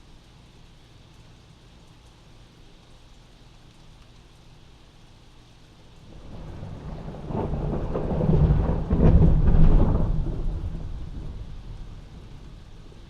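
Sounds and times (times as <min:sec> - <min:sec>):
steady rain: 0:00.0 - 0:13.0
thunder rumbling: 0:06.0 - 0:13.0.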